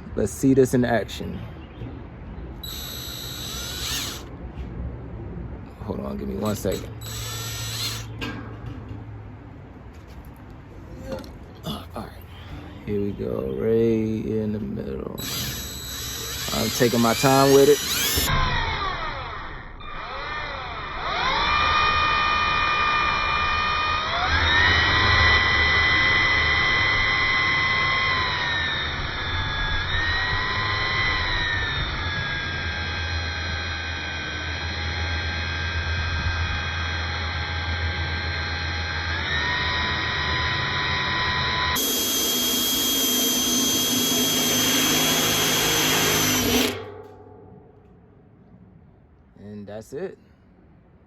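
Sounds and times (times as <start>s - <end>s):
cordless drill motor whine: 2.6s - 4.3s, 6.4s - 8.2s, 15.2s - 46.8s.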